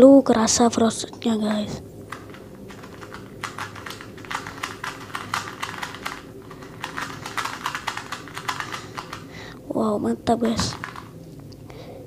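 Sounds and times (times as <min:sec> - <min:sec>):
puzzle cube plastic clicks: 0:01.5 - 0:09.6, 0:10.4 - 0:11.2.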